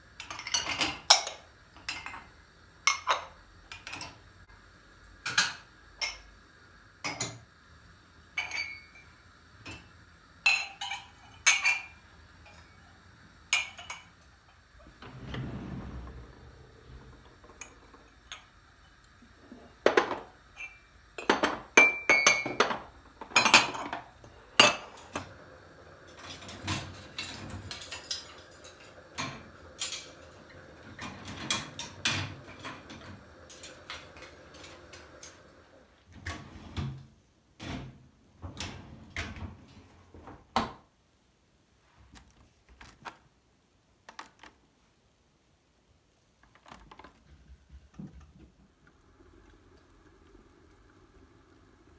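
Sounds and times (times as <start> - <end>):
faint steady hum: 0.0 - 51.9
dishes and pots clinking: 0.2 - 2.3, 8.4 - 9.9, 10.5 - 12.8, 19.8 - 25.5, 26.1 - 35.6.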